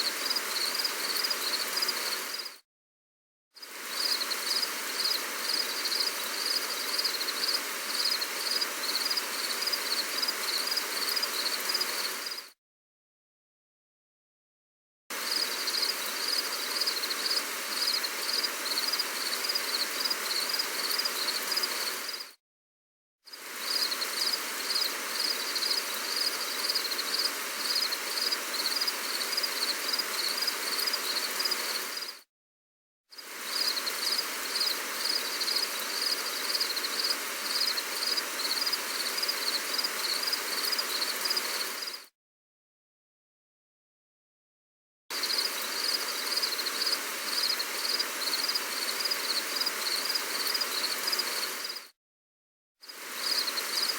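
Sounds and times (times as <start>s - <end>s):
gentle rain hiss: 0.0s - 2.6s, 3.6s - 12.5s, 15.1s - 22.3s, 23.3s - 32.2s, 33.1s - 42.1s, 45.1s - 51.9s, 52.8s - 53.9s
insects chirping: 0.0s - 2.6s, 3.6s - 12.5s, 15.1s - 22.3s, 23.4s - 32.2s, 33.2s - 42.1s, 45.2s - 51.9s, 52.9s - 53.9s.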